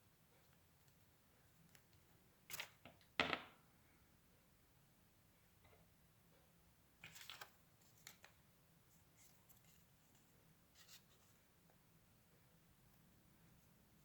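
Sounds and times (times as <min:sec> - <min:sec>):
paper rustling: 0:07.0 - 0:08.4.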